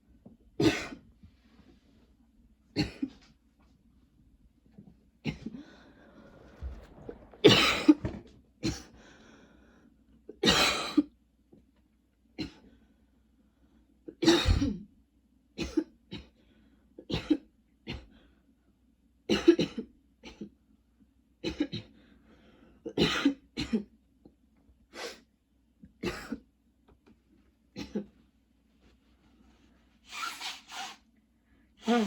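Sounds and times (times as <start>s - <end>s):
woman coughing: 0.6s - 1.0s, 2.8s - 3.2s, 10.4s - 11.1s, 14.2s - 14.8s, 19.3s - 20.5s, 22.9s - 23.9s, 26.0s - 26.4s.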